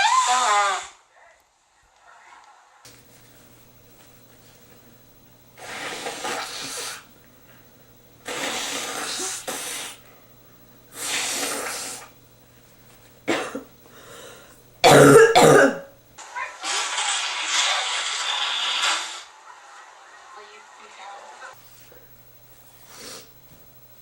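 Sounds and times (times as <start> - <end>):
person blowing nose: 0.0 - 1.0, 5.6 - 7.1, 8.2 - 10.0, 10.9 - 12.1, 17.0 - 19.3, 22.8 - 23.3
person snorting: 5.6 - 7.1, 8.2 - 10.0, 10.9 - 12.2, 22.8 - 23.4
person sneezing: 14.8 - 15.9.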